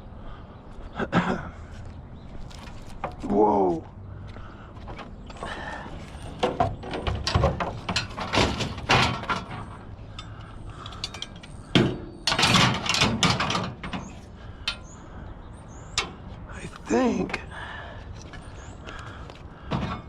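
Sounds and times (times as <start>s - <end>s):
scrap junk rattling: 4.7s - 15.1s, 19.2s - 20.0s
scraping clatters: 4.8s - 15.0s.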